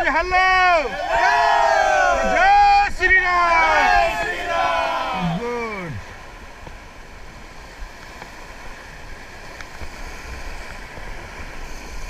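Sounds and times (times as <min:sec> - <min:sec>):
river water rushing: 0:03.3 - 0:12.0.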